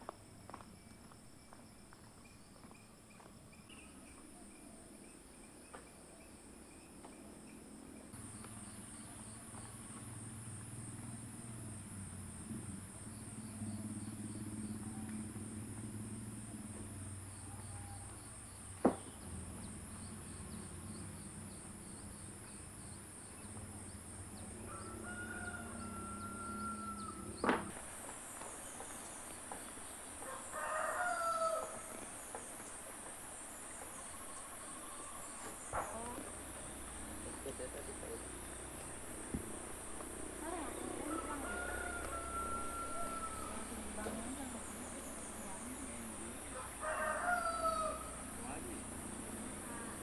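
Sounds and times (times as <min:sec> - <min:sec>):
insects chirring: 0:00.0 - 0:50.0
rooster crowing: 0:24.6 - 0:27.4, 0:30.2 - 0:32.0, 0:40.6 - 0:44.1, 0:46.4 - 0:48.6.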